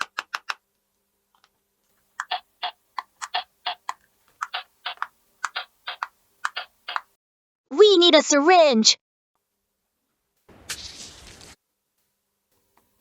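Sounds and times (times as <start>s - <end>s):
plastic toy pieces clicking: 0.0s - 0.6s.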